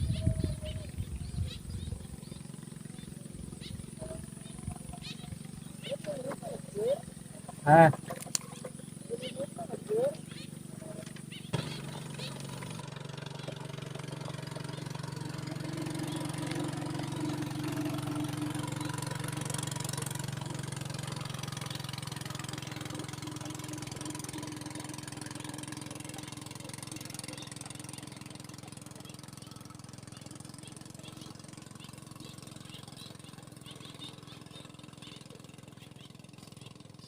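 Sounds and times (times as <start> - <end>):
engine droning: 0.0 - 37.0.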